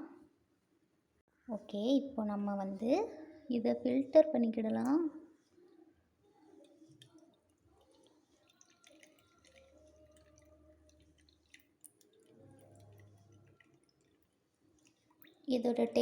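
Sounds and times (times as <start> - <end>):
juice dripping through strainer: 6.2 - 15.8.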